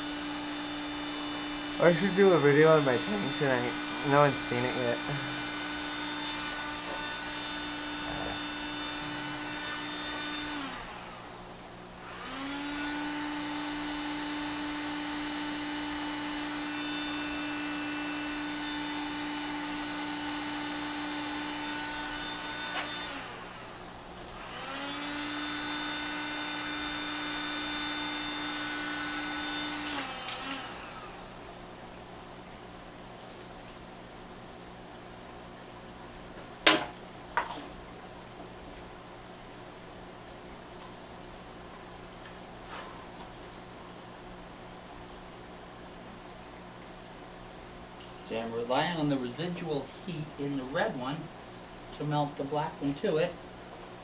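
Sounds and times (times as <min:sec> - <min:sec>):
heat gun fan whining: 0:00.0 - 0:34.1, 0:47.4 - 0:54.0.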